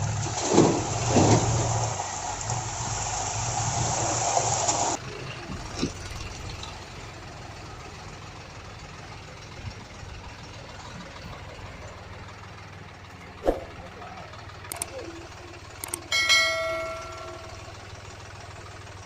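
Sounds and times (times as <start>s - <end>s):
heavy machinery engine idling: 0.0s - 19.0s.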